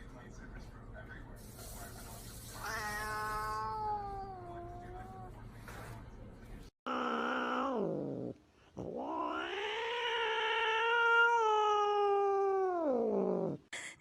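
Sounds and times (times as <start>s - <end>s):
cat meowing: 2.6s - 5.3s, 6.9s - 13.6s.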